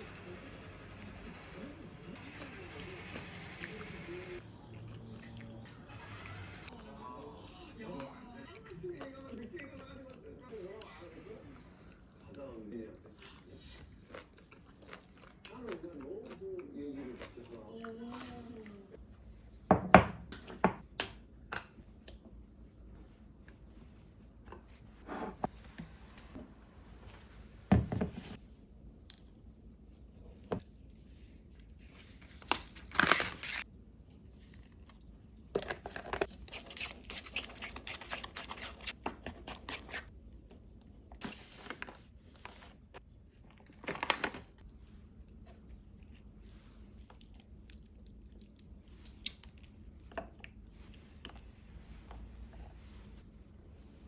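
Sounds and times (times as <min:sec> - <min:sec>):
plastic packets crinkling and tearing: 0:32.4 - 0:33.6.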